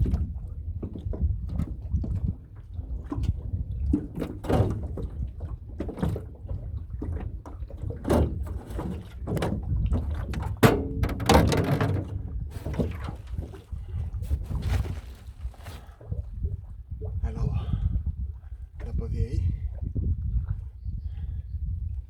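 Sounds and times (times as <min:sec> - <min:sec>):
low rumble of water: 0:00.0 - 0:22.0
knocks on boat hull: 0:10.4 - 0:13.0.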